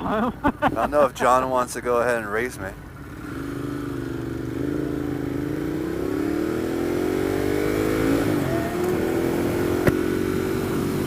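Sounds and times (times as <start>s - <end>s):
motorcycle engine accelerating: 2.8s - 11.0s.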